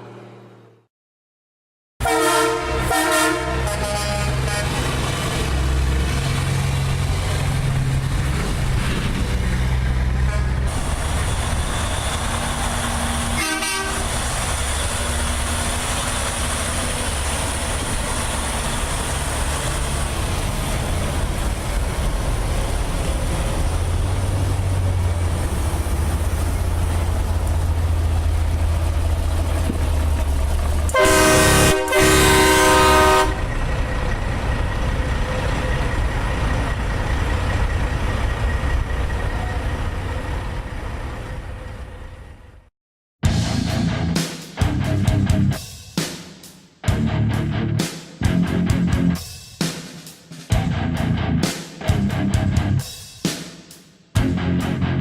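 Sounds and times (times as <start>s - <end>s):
air horn blast: 2.0s - 4.8s, 13.3s - 14.1s, 30.9s - 33.5s
diesel engine rumbling: 2.6s - 42.7s.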